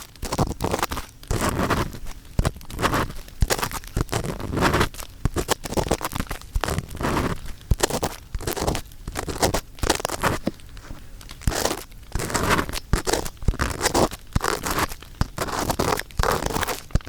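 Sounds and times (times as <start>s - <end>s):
ear pick scraping microphone: 0.0s - 17.0s.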